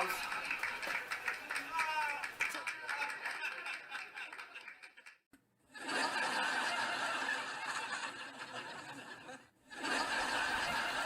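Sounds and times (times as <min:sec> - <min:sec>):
people snickering and chuckling: 0:05.7 - 0:11.0.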